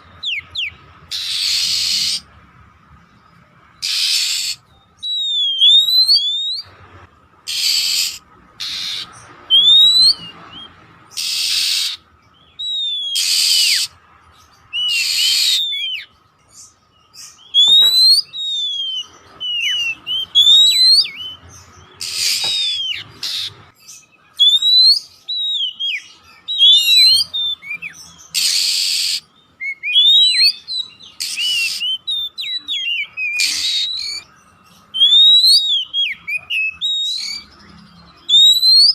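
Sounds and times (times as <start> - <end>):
bird whistled song: 0.0 - 2.4, 3.0 - 38.9
bird harsh rasping calls: 0.0 - 38.9.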